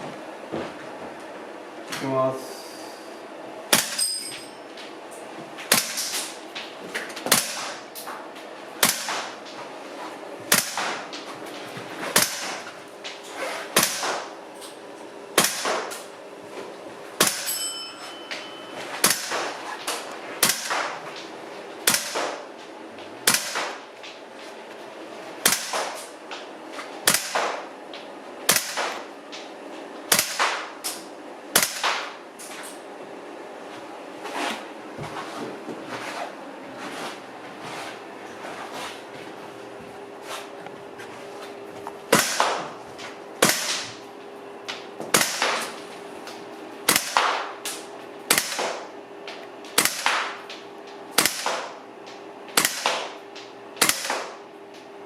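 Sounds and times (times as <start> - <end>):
airsoft rifle shots: 5.7 - 6.3, 7.3 - 7.8, 8.8 - 9.4, 10.5 - 11.1, 13.8 - 14.3, 15.4 - 16.0, 19.0 - 19.6, 20.4 - 21.0, 21.8 - 22.5, 23.2 - 23.9, 25.4 - 26.1, 27.0 - 27.7, 28.5 - 29.1, 30.1 - 30.8, 31.5 - 32.2, 42.1 - 42.7, 43.4 - 44.0, 45.1 - 45.7, 46.9 - 47.6, 48.3 - 48.9, 49.8 - 50.4, 51.2 - 51.8, 52.6 - 53.2, 53.8 - 54.4.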